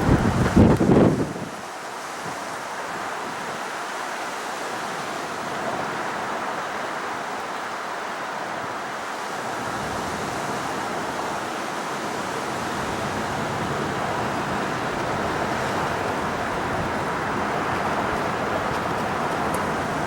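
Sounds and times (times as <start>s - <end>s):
jet engines at takeoff: 0.0s - 20.0s.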